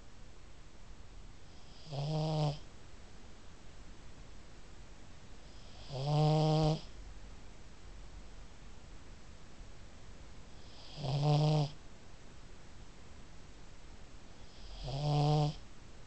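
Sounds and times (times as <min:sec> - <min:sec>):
dog snoring: 0:01.5 - 0:02.7, 0:05.5 - 0:07.0, 0:10.6 - 0:11.8, 0:14.4 - 0:15.6.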